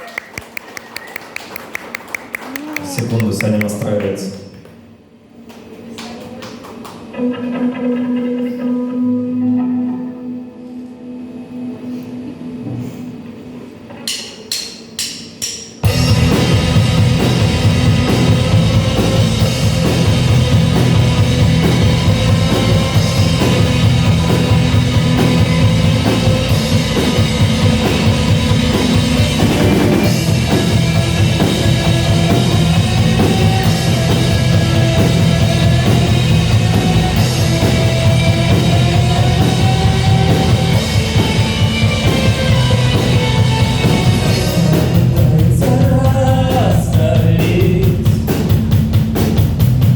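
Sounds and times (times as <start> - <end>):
drum kit beat: 14.1 - 49.9
rock band playing live: 15.8 - 49.9.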